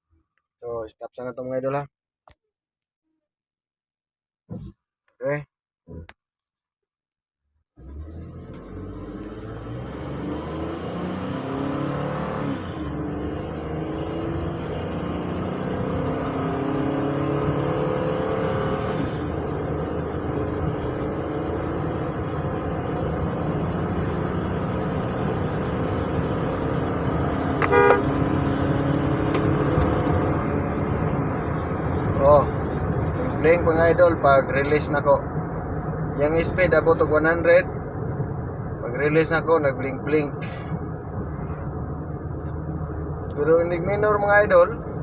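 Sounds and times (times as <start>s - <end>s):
van engine accelerating hard: 7.7s - 38.9s
road noise: 7.8s - 45.0s
short horn toot: 27.6s - 28.2s.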